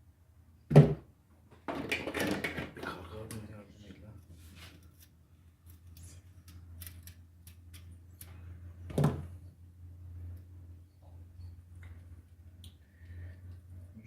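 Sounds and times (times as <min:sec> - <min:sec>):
pliers clicking and tapping: 0:06.4 - 0:08.4.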